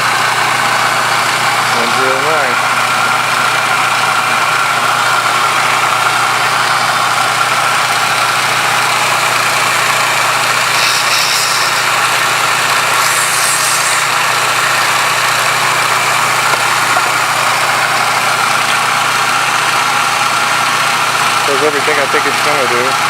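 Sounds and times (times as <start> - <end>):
belt grinder motor humming: 0.0 - 21.6
high hissing: 10.6 - 15.0.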